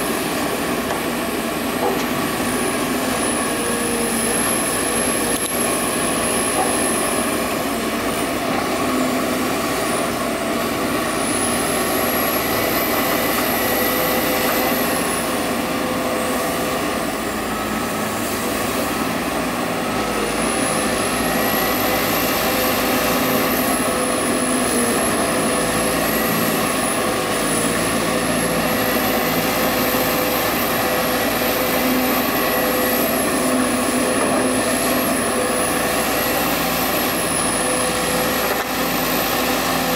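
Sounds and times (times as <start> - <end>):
excavator running: 0.0 - 39.9
high-pitched hydraulic whine: 0.0 - 39.9.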